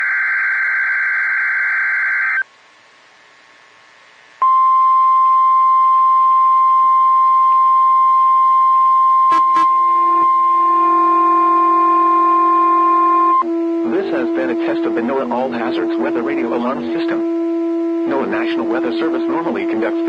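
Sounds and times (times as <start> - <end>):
lower steady tones: 4.4 - 20.0
buzzy warbling data tone: 9.3 - 17.2.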